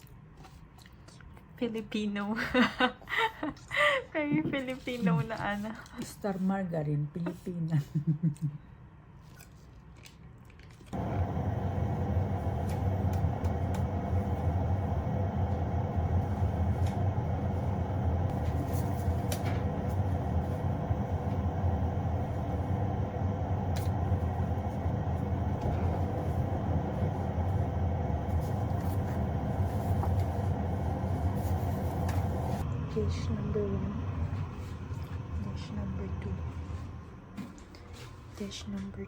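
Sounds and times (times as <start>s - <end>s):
low mechanical rumble with hum: 10.9s - 39.0s.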